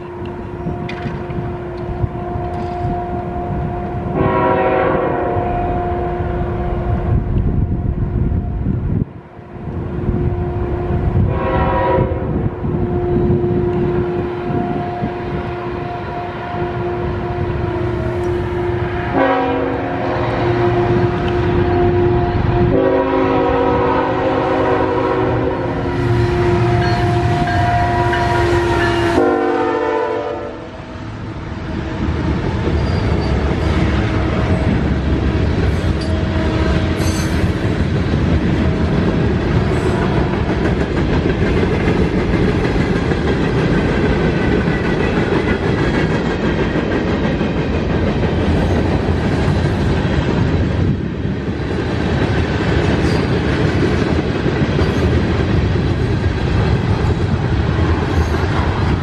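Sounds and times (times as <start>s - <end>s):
wheels clattering on rails: 0.0s - 3.0s, 32.1s - 59.0s
train horn: 0.0s - 8.8s, 9.5s - 37.6s.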